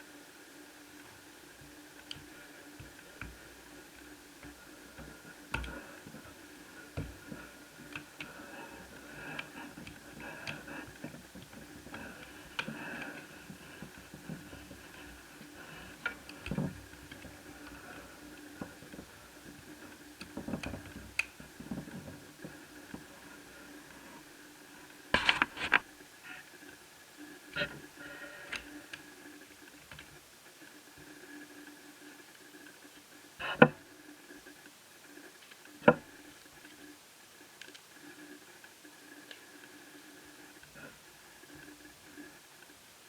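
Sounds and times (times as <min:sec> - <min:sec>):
faint steady hum: 0:00.0 - 0:43.0
cables unplugging clicks and taps: 0:01.6 - 0:23.5.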